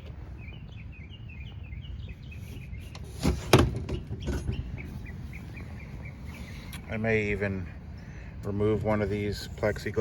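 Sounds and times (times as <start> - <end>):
small bird chirping: 3.9 - 6.9.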